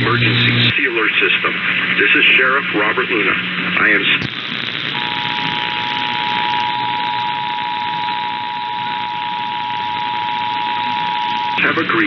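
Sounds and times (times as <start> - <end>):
radio hiss: 0.0 - 12.0.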